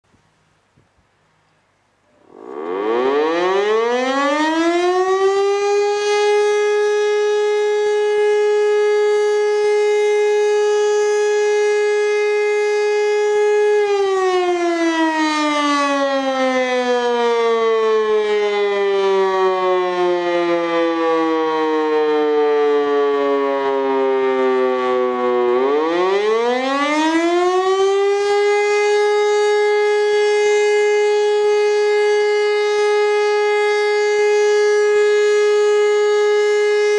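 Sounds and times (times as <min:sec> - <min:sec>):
civil defence siren: 0:02.2 - 0:36.9.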